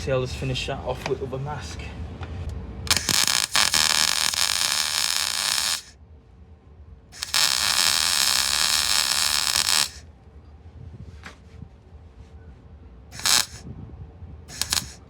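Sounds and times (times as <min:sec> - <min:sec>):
welder crackling buzz: 0:02.9 - 0:05.9, 0:07.2 - 0:10.0, 0:13.2 - 0:13.6, 0:14.5 - 0:15.0.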